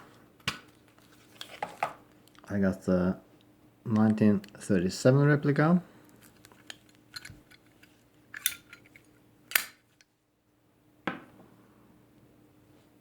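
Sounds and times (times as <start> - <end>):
metal lighters clicking: 9.5 - 9.8.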